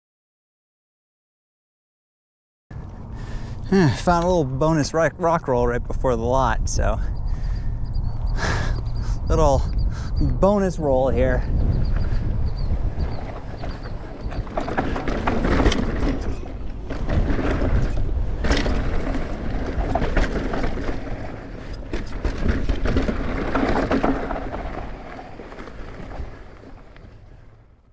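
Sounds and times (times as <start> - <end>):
tyres crunching on dirt: 2.8 - 7.0, 8.2 - 27.9
wind rushing on microphone: 2.8 - 27.6
bike rattling and knocking: 6.3 - 27.9.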